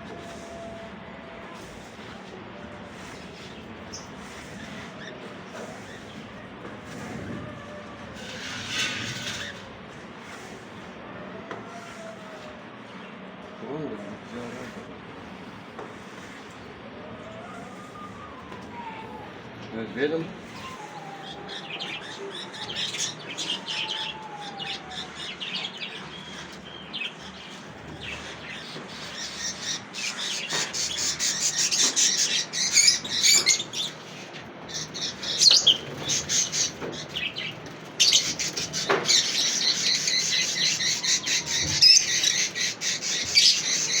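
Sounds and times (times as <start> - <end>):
lovebirds chirping: 20.4 - 44.0.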